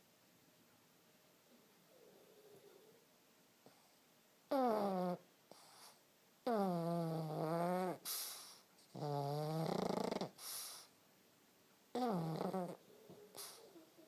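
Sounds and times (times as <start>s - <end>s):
dog snoring: 1.9s - 3.0s, 4.5s - 10.9s, 11.9s - 14.0s
hissing breath: 13.3s - 13.8s.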